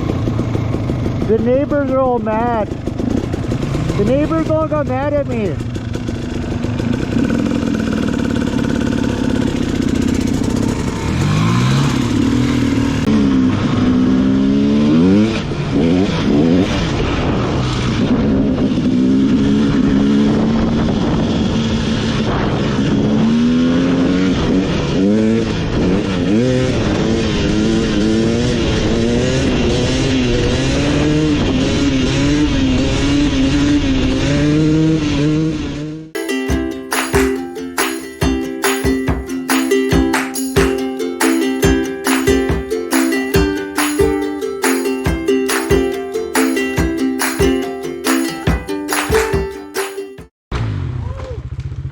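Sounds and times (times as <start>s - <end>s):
two-stroke dirt bike revving: 0.0s - 49.9s.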